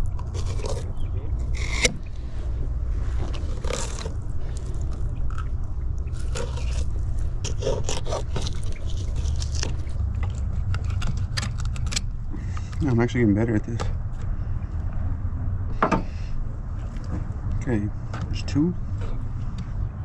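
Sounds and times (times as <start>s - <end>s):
steady low rumble: 0.0s - 20.0s
knife scraping and cutting fish: 0.1s - 2.1s, 3.1s - 5.5s, 6.1s - 12.8s.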